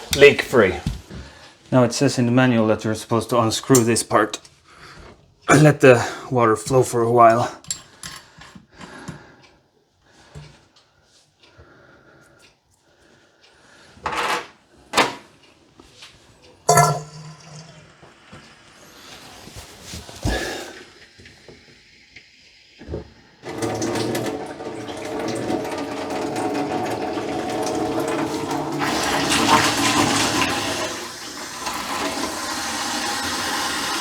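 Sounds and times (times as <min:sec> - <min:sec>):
water rushing into sink: 0:16.7 - 0:18.4, 0:20.2 - 0:34.0.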